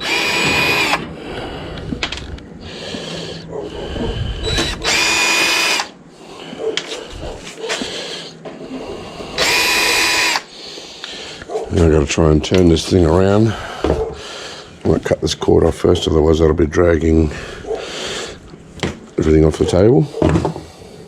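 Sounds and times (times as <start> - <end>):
cordless drill whining: 0.0 - 1.1, 4.3 - 6.0, 9.3 - 10.5.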